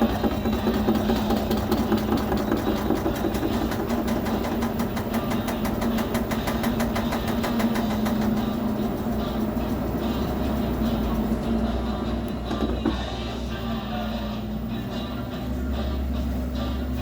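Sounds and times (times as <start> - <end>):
drum ticking: 0.0 - 11.4
washing machine motor hum: 0.0 - 17.0.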